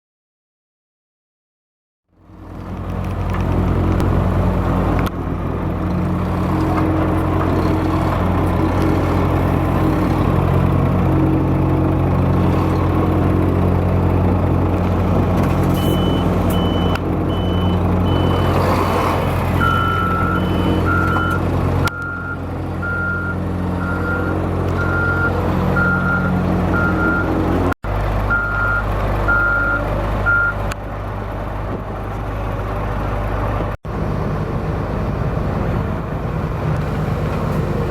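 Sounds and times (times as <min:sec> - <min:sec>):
heavy diesel engines running: 0:02.1 - 0:37.9
reversing alarms beeping: 0:15.7 - 0:18.6, 0:19.6 - 0:27.4, 0:28.3 - 0:30.6.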